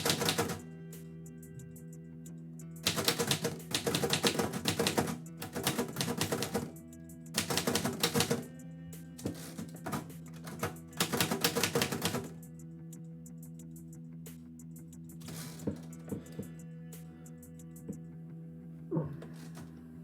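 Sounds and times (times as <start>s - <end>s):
typewriter keys clacking: 0.0s - 0.6s, 2.8s - 6.7s, 7.4s - 8.5s, 9.2s - 12.4s
soft background music: 0.0s - 20.0s.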